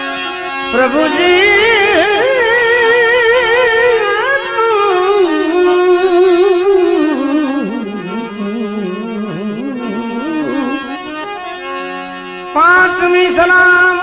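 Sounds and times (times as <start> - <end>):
devotional song with vibrato melody: 0.0 - 14.0.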